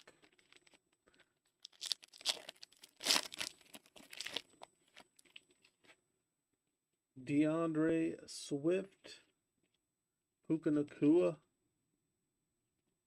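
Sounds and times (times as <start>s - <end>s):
wrapper tearing and crinkling: 0.0s - 0.8s, 1.6s - 5.4s.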